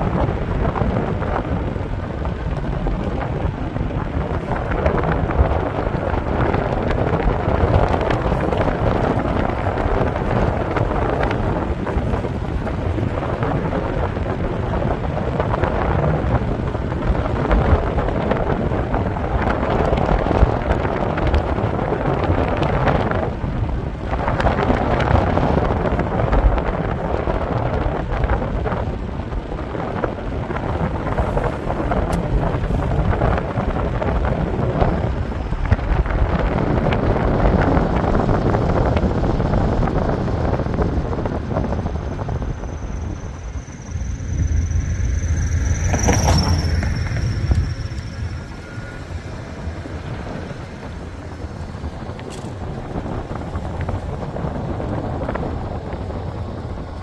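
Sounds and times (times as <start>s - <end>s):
wind buffeting microphone: 0.0s - 57.0s
low rumble: 29.2s - 57.0s
brief high squeal: 42.5s - 50.8s.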